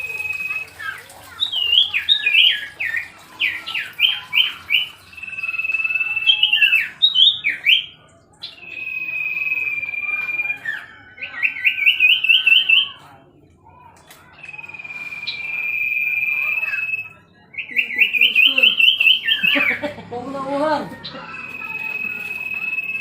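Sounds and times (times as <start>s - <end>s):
bird singing whistled notes: 0.0s - 13.0s, 14.2s - 19.8s, 21.0s - 23.0s.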